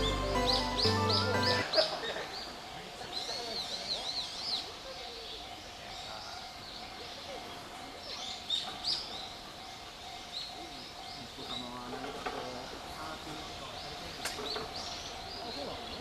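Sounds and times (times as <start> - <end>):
birds chirping: 0.0 - 1.8
outdoor background noise: 0.0 - 16.0.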